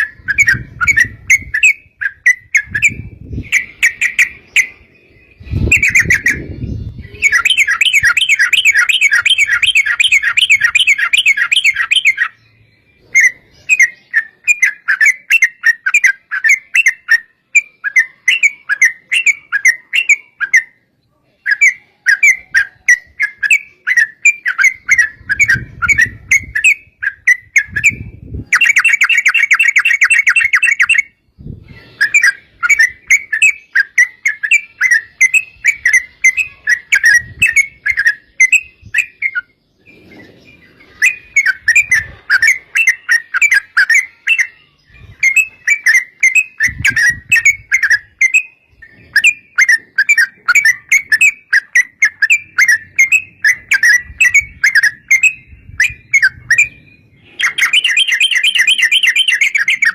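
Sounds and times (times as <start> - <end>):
bird singing chattering runs: 21.5 - 59.9.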